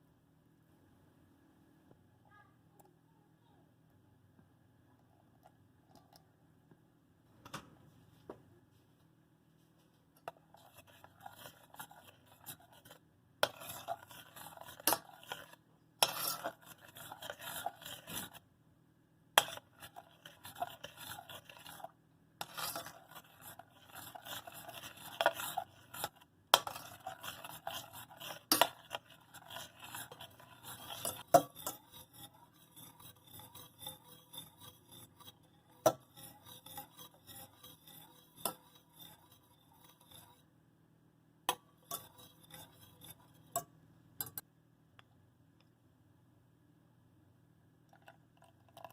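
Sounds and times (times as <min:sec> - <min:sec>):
utensil scraping a bowl: 0:10.2 - 0:18.4, 0:19.4 - 0:40.5, 0:41.5 - 0:44.4.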